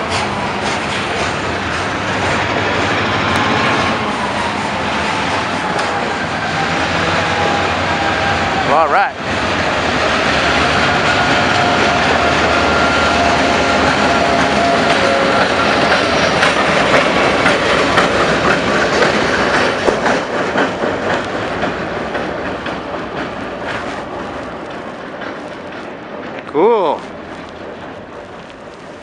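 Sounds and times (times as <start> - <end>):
freight cars rolling: 0.0 - 29.0
wheels clicking over rail joints: 0.0 - 29.0
high-pitched wheel squeal: 10.2 - 16.4.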